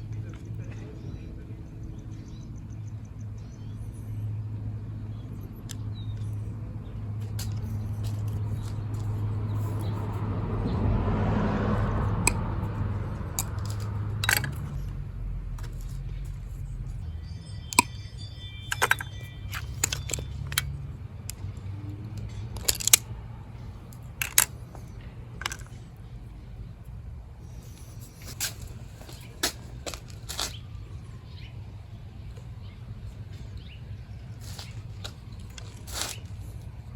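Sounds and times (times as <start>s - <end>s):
vehicle passing: 0.0s - 18.0s, 18.8s - 36.9s
small tools clicking and tapping: 11.9s - 15.0s, 15.6s - 23.2s, 23.9s - 25.9s.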